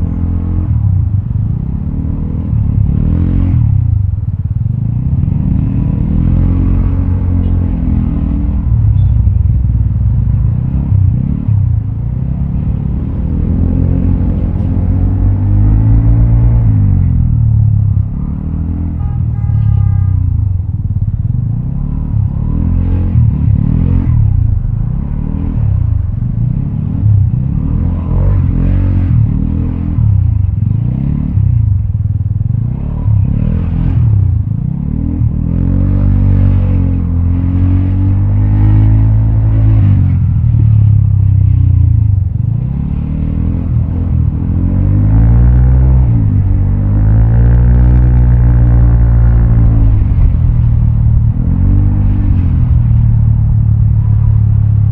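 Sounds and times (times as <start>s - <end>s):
short horn: 18.8s - 20.6s.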